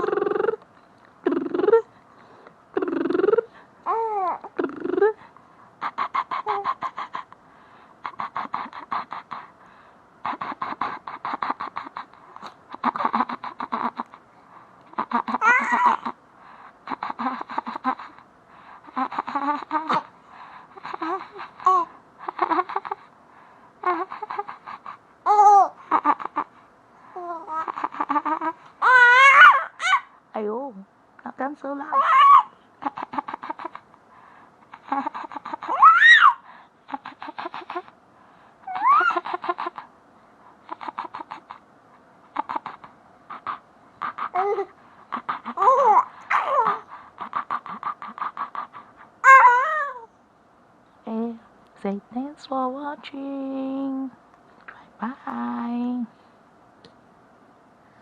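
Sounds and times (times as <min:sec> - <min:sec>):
man making silly vocal noises: 0:00.0 - 0:00.6, 0:01.2 - 0:01.9, 0:02.8 - 0:03.5, 0:04.4 - 0:05.2
baby laughing: 0:05.8 - 0:07.3, 0:10.3 - 0:14.2, 0:14.9 - 0:16.2, 0:16.8 - 0:18.2, 0:18.9 - 0:20.1, 0:20.7 - 0:23.1, 0:23.8 - 0:26.5, 0:27.2 - 0:30.1, 0:31.9 - 0:33.9, 0:34.7 - 0:37.9, 0:38.7 - 0:39.9, 0:40.7 - 0:41.6, 0:42.3 - 0:50.1
baby squealing: 0:15.3 - 0:16.1, 0:28.8 - 0:30.1, 0:31.9 - 0:33.0, 0:35.6 - 0:36.4, 0:38.7 - 0:39.3, 0:44.2 - 0:47.4, 0:49.2 - 0:50.1.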